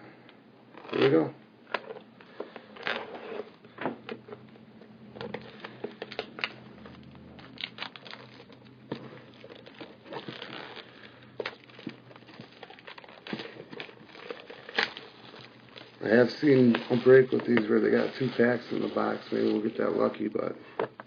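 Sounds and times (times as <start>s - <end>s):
plastic wrapping crinkling and tearing: 0.7s - 21.0s.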